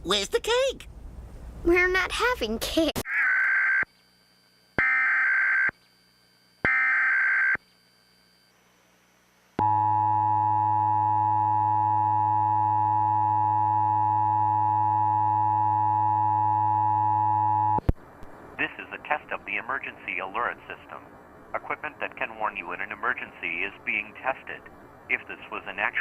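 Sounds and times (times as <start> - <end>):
steady two-tone attention signal: 9.6 - 17.8.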